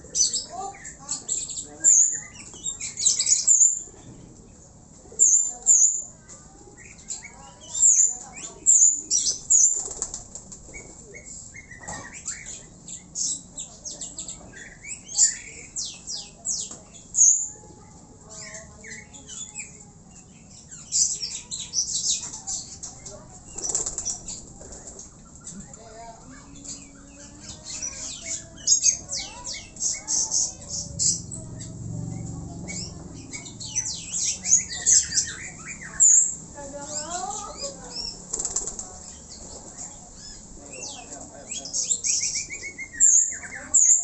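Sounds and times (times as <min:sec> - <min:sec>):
pigeons flapping wings: 0:09.7 - 0:10.9, 0:23.5 - 0:25.0, 0:38.2 - 0:39.0.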